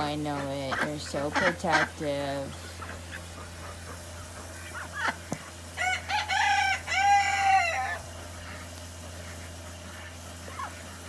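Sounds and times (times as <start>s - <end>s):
rooster crowing: 5.8s - 8.1s.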